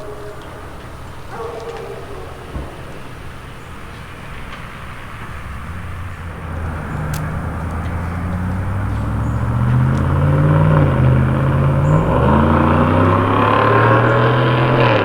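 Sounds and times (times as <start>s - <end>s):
dog whining: 0.0s - 3.1s
truck engine rumbling: 0.0s - 15.0s.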